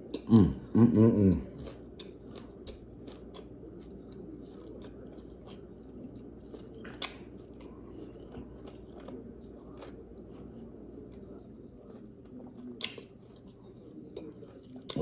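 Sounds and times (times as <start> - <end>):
low steady hum: 0.0 - 15.0
chewing and biting food: 1.4 - 15.0.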